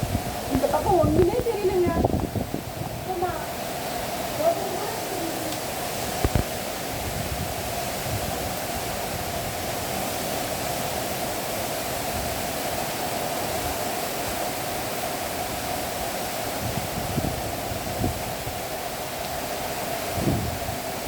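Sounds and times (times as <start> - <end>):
heavy rain pouring: 0.0 - 21.0.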